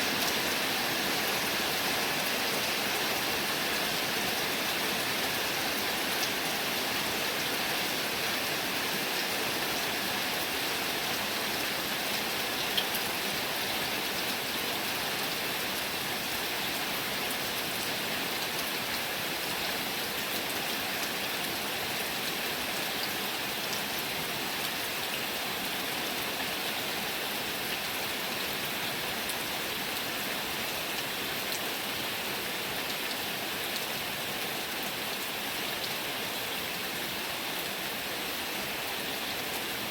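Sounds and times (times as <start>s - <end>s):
heavy rain falling: 0.0s - 39.9s
drip-like tick: 12.7s - 13.1s.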